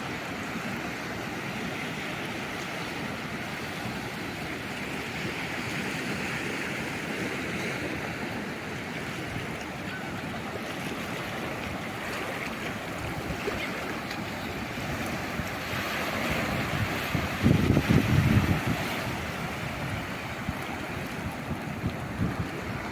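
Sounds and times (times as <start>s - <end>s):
calm sea waves washing ashore: 0.0s - 22.9s.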